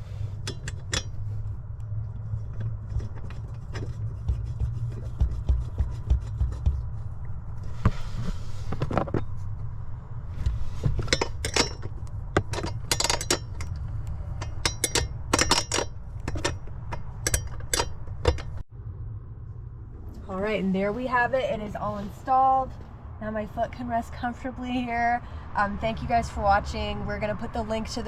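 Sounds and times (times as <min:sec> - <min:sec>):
low hum: 0:00.0 - 0:25.9
wrench clicking: 0:14.4 - 0:18.6.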